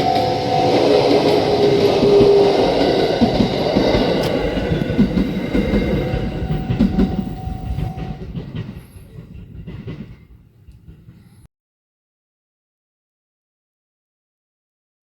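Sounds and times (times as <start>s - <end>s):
train passing: 0.0s - 11.5s
wheels clicking over rail joints: 0.0s - 11.5s.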